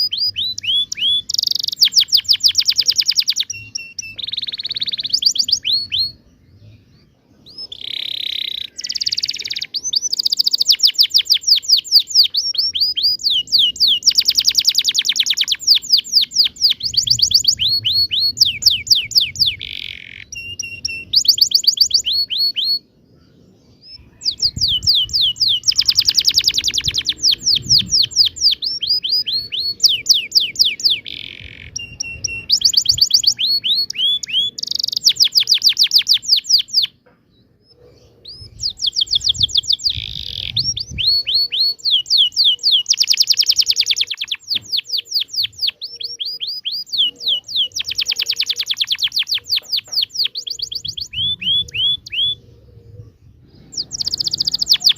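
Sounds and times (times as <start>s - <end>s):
canary singing trills: 0.0s - 54.9s.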